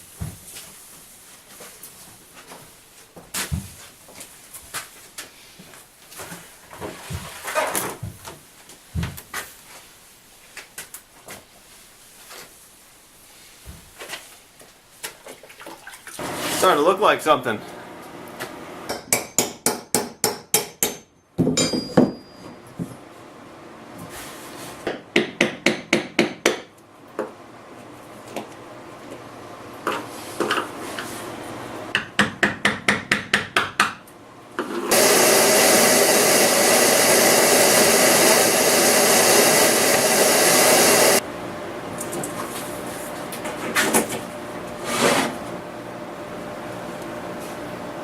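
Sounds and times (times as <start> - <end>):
loud steady power tool: 34.9 - 41.2.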